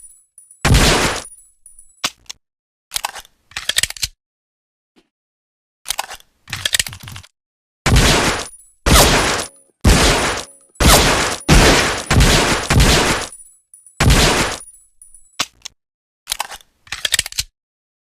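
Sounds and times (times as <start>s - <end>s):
metallic clicks: 0.0s - 4.0s, 8.4s - 17.5s
pistol shots with ringing tail: 7.9s - 13.4s, 14.0s - 14.7s.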